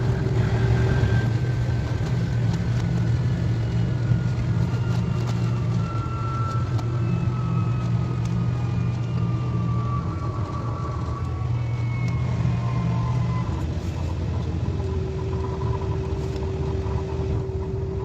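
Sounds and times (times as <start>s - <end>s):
faint falling whine: 0.0s - 18.0s
train humming and rumbling: 0.0s - 18.0s.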